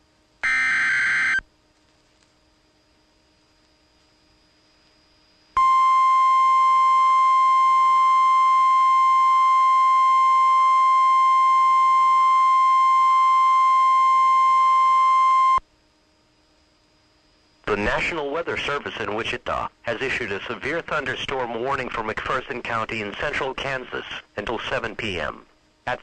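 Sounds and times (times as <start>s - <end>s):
steady electronic alarm tone: 0.4s - 1.4s, 5.6s - 15.6s.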